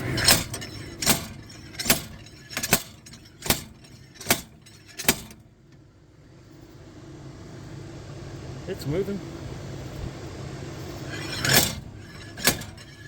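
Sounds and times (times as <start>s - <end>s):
sharp metal clanks: 0.0s - 5.5s, 11.0s - 13.0s.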